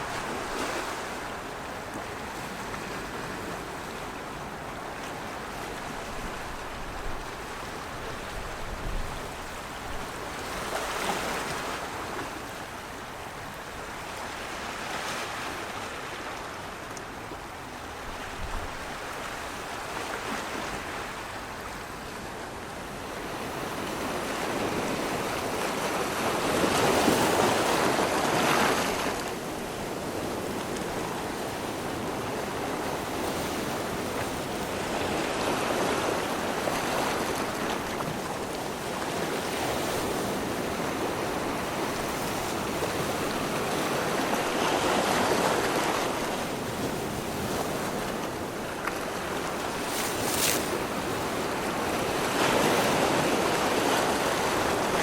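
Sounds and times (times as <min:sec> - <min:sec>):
waves washing in: 0:00.0 - 0:55.0.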